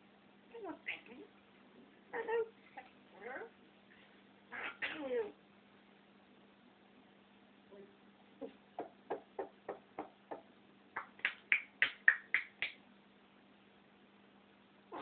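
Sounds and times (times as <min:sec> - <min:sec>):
parrot clucking knocks: 0:08.8 - 0:10.5.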